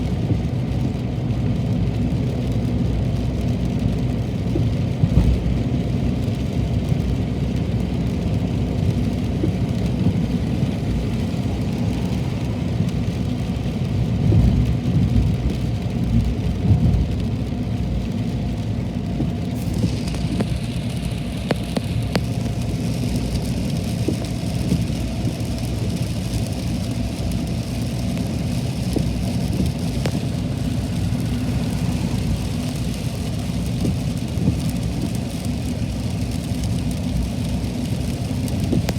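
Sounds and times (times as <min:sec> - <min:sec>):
heavy rain: 0:00.0 - 0:38.9
low rumble: 0:00.0 - 0:38.9
high hiss: 0:19.6 - 0:22.8.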